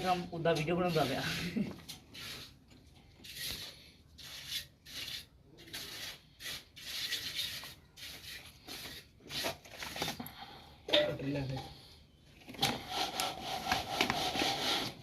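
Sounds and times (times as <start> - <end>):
hand tool rasping: 3.2 - 9.9.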